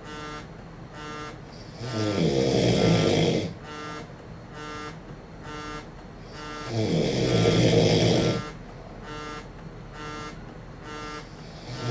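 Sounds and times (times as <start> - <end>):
man snoring: 1.6 - 3.6, 6.4 - 8.6, 11.4 - 11.9.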